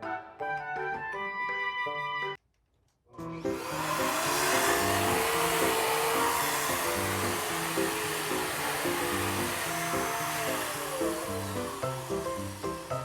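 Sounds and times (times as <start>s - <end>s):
background music: 0.0s - 2.4s, 3.2s - 13.0s
vacuum cleaner motor rushing: 3.5s - 13.0s.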